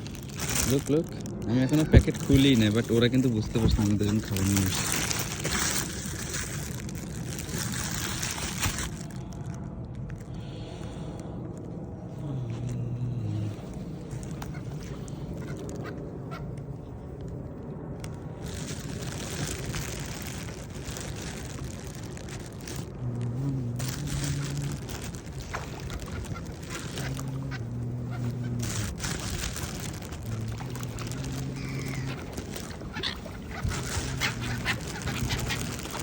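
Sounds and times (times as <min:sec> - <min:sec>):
outdoor background noise: 0:00.0 - 0:36.0
birds calling: 0:23.8 - 0:36.0.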